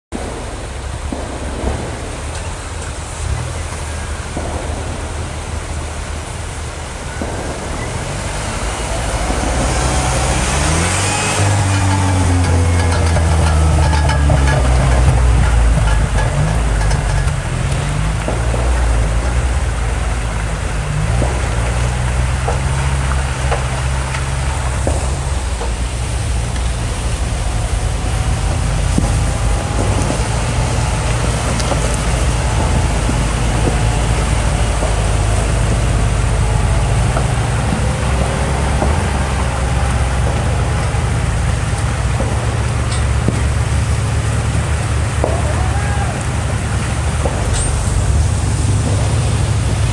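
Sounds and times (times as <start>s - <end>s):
car engine running: 8.4s - 45.6s.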